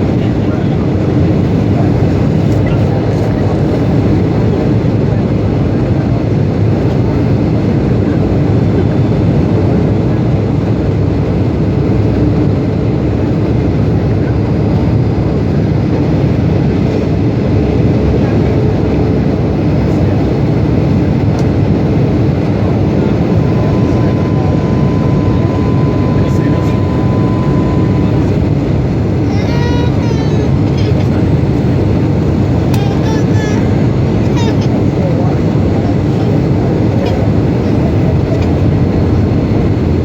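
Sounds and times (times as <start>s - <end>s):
airplane cabin engine rumble: 0.0s - 40.0s
faint steady tone: 23.3s - 28.4s.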